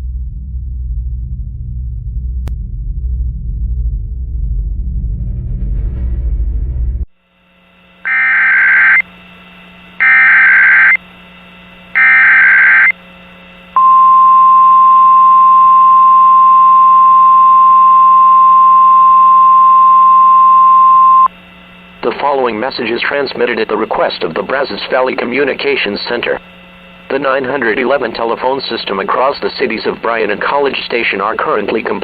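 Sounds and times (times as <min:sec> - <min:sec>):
faint low hum: 0:07.6 - 0:32.0
steady attention tone: 0:08.0 - 0:21.4
warbling data tone bursts: 0:08.1 - 0:09.0, 0:10.0 - 0:11.0, 0:12.0 - 0:12.9, 0:13.8 - 0:21.3.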